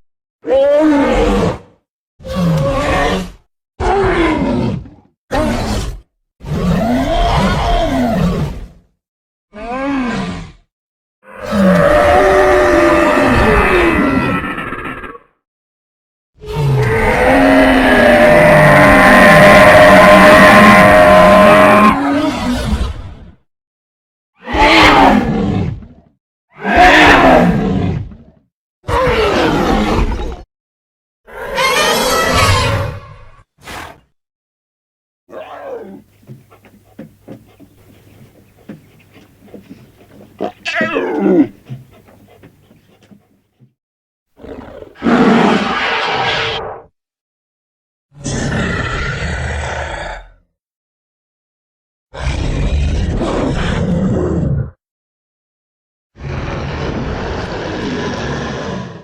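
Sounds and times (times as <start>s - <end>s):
loud dinosaur roar: 0.4s - 8.7s, 9.5s - 10.6s, 11.2s - 15.3s, 16.4s - 22.9s, 24.4s - 25.9s, 26.6s - 28.1s, 28.9s - 30.4s, 31.3s - 33.1s, 35.3s - 36.6s, 39.7s - 42.4s, 44.4s - 46.9s, 48.2s - 50.4s, 52.2s - 54.6s, 56.2s - 59.0s
cartoon dinosaur grunts and clicks: 35.3s - 43.7s
cartoon dinosaur call: 40.4s - 41.5s.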